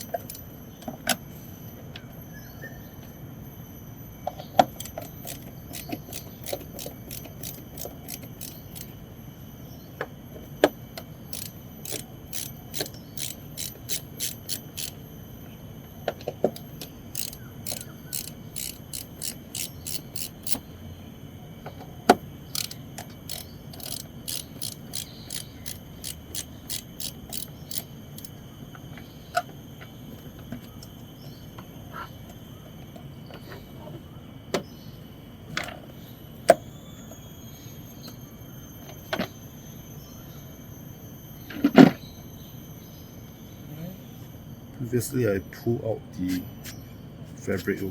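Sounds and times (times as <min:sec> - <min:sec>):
ratchet tool clicking: 0:04.8 - 0:09.0, 0:11.3 - 0:15.0, 0:16.5 - 0:20.6, 0:22.5 - 0:28.3.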